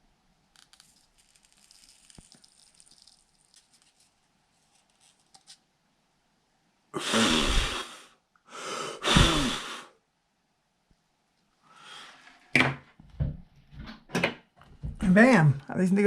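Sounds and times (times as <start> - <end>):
person blowing out breaths: 7.0 - 10.0.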